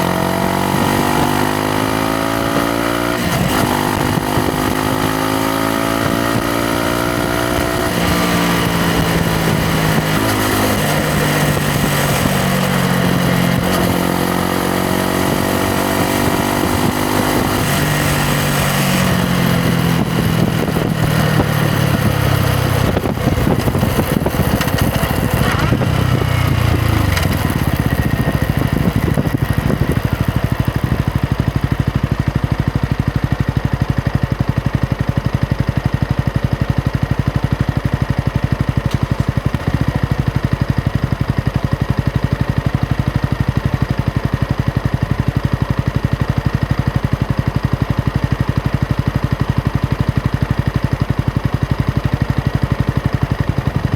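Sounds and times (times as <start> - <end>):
motorcycle engine running: 0.0 - 53.9
motorcycle engine idling: 16.2 - 53.9.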